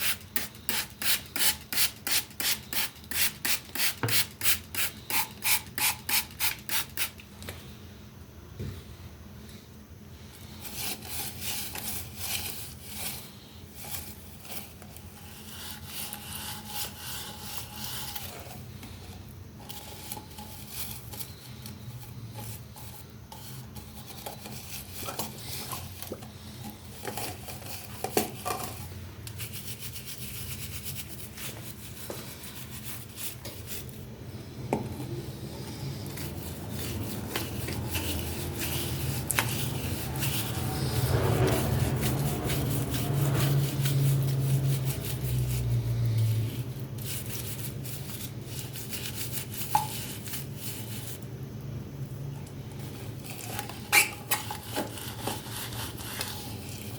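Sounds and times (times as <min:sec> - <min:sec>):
scraping on hard object: 0:10.5 - 0:51.2, 0:52.8 - 0:56.9.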